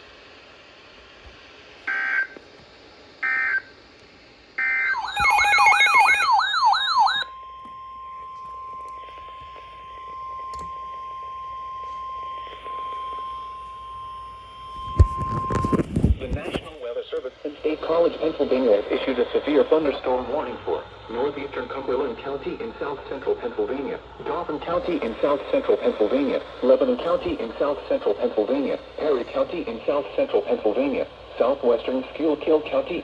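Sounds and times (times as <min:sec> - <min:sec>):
warbling alarm: 0:03.2 - 0:03.7, 0:04.6 - 0:15.8
screechy digital data bursts: 0:04.6 - 0:07.3
steady warning tone: 0:04.6 - 0:15.9.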